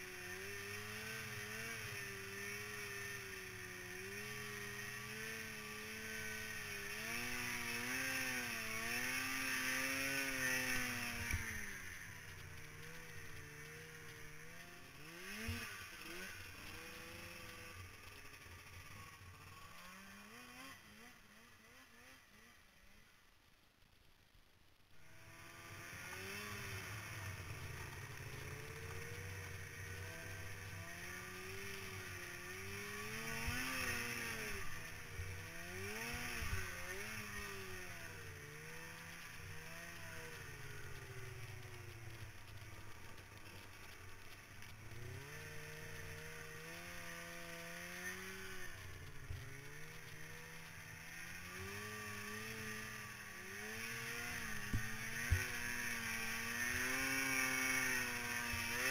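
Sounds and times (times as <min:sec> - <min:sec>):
snowmobile engine revving: 0:00.0 - 0:23.1, 0:25.0 - 0:58.9.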